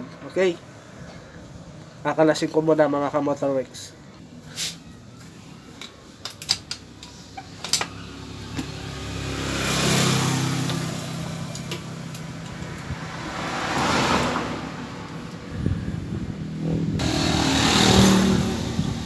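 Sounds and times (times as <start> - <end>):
vehicle passing by: 7.9 - 19.0.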